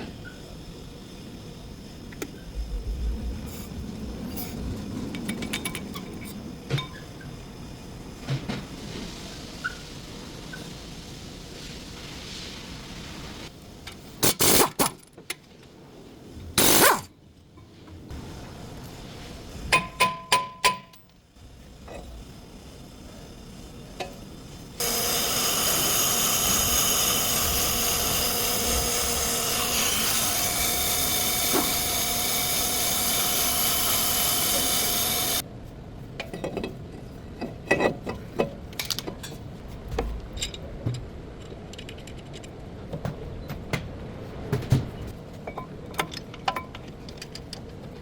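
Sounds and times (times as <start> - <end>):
power tool running: 16.6 - 17.0, 24.8 - 35.4.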